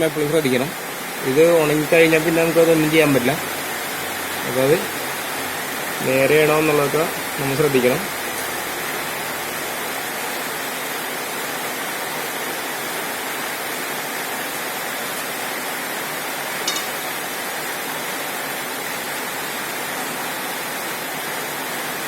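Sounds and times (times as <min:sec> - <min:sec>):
hiss-like background noise: 0:00.0 - 0:22.0
short high ring: 0:16.7 - 0:17.1.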